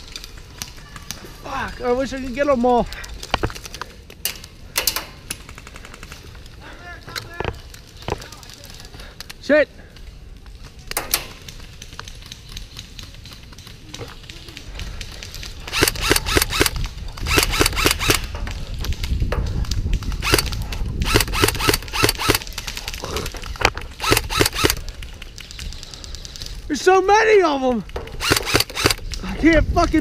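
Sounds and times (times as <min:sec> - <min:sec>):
airsoft guns firing: 0:15.6 - 0:18.3, 0:20.2 - 0:22.6, 0:24.0 - 0:24.8, 0:28.1 - 0:29.1.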